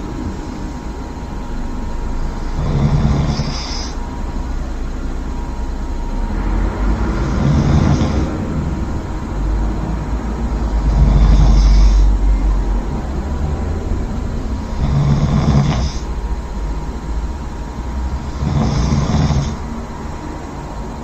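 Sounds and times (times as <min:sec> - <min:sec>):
steady low rumble: 0:00.0 - 0:21.0
person snoring loudly: 0:02.4 - 0:04.0, 0:07.0 - 0:08.4, 0:10.6 - 0:12.3, 0:14.6 - 0:16.1, 0:18.1 - 0:19.6.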